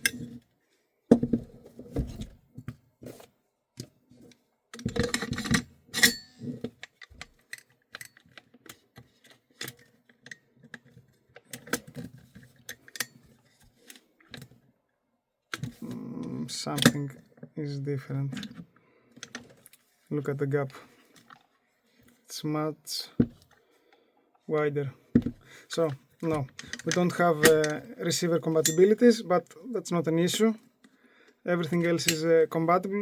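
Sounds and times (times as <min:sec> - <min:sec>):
metal rifle parts clicking and clacking: 0:04.7 - 0:14.5, 0:26.3 - 0:27.9, 0:28.5 - 0:29.1, 0:32.0 - 0:32.4.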